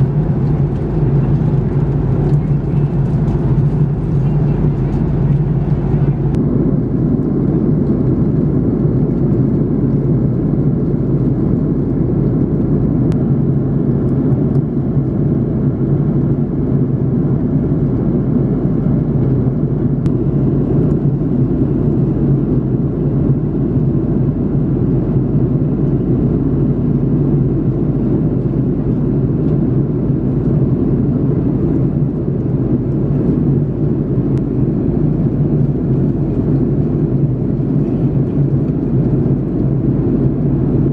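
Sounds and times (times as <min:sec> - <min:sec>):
low rush of airflow: 0:00.0 - 0:25.0
airplane cabin noise: 0:00.0 - 0:40.9
jet engines: 0:00.0 - 0:40.9.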